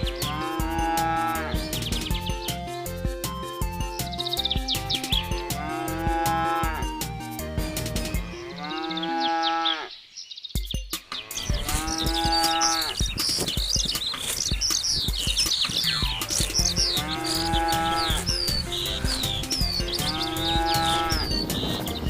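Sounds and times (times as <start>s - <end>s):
birds chirping: 0.0s - 22.0s
cows mooing: 0.1s - 1.7s, 5.2s - 7.0s, 8.5s - 10.0s, 11.1s - 13.0s, 15.9s - 21.6s
quiet background music: 3.4s - 9.9s, 10.6s - 22.0s.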